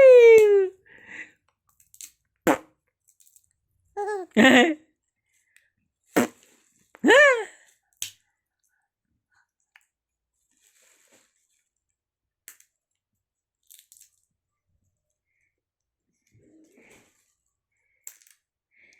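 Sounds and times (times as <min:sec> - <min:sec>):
baby mouth noises: 0:04.0 - 0:04.4
baby squealing: 0:04.0 - 0:04.4.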